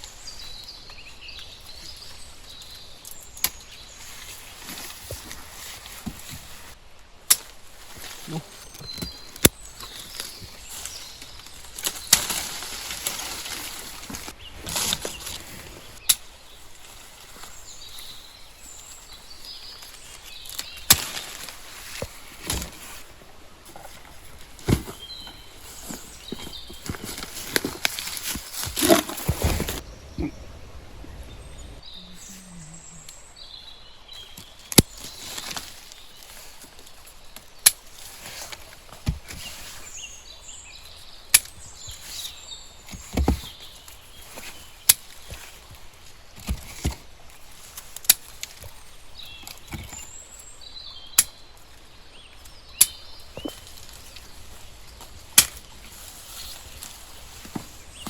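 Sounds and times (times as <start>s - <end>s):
faint bird chirps: 29.8s - 35.2s.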